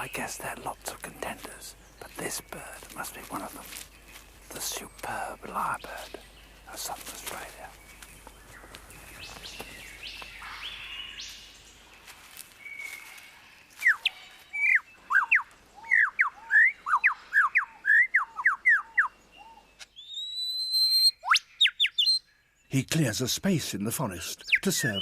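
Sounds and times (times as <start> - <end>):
forest bird calls: 0.0 - 25.0
lyrebird singing whistled notes: 13.8 - 22.3, 24.4 - 25.0.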